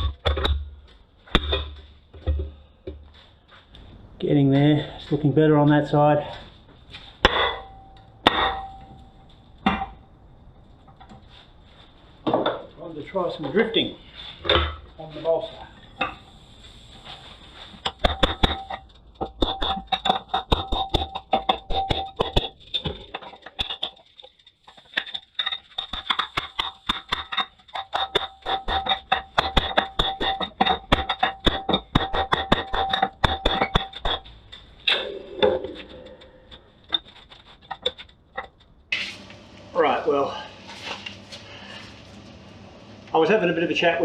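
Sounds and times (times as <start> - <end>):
hammer striking metal: 7.2 - 9.0.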